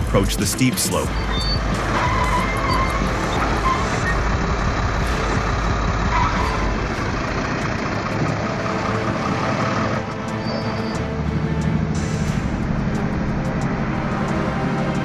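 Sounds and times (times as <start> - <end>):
heavy diesel engine rumbling: 0.0 - 15.0.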